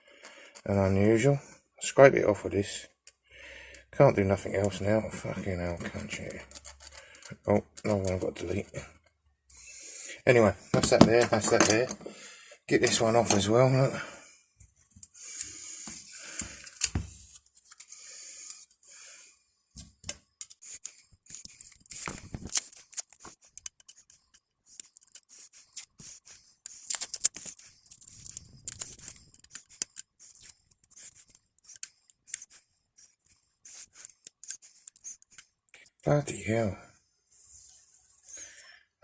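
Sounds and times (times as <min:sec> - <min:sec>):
hand tool scraping metal: 0:10.8 - 0:12.1, 0:12.8 - 0:13.6.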